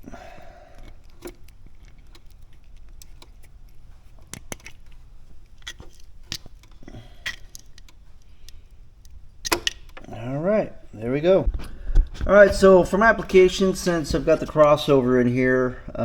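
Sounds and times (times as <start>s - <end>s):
low steady hum: 0.0s - 16.0s
tools and parts clicking and knocking: 0.7s - 10.1s.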